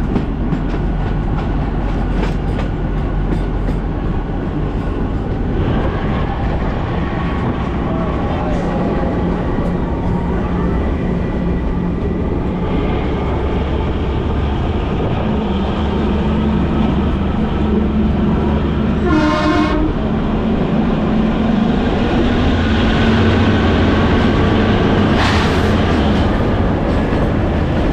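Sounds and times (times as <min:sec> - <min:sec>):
train wheels rumbling on rails: 0:00.0 - 0:27.9
train horn blast: 0:19.0 - 0:20.0.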